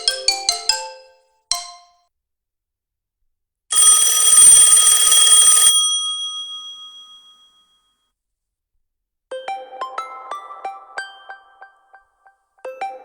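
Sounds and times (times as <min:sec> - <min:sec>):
phone ringtone: 0:03.7 - 0:07.8.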